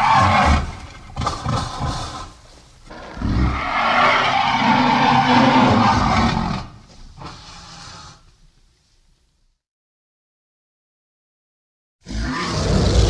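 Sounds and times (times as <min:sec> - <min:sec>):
dinosaur roar: 0:00.0 - 0:08.2, 0:12.0 - 0:13.0
low growl: 0:12.1 - 0:13.0.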